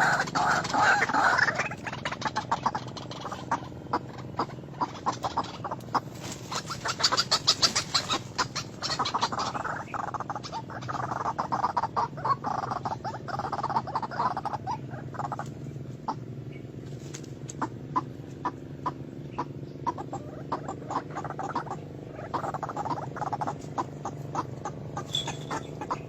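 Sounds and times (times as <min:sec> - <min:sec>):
waterhen calling: 0:00.0 - 0:16.2, 0:17.5 - 0:26.0.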